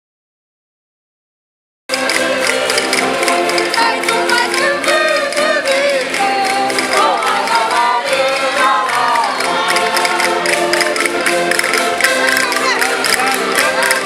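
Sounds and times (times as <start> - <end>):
button accordions playing: 1.9 - 14.0
women singing folk song: 3.4 - 11.3.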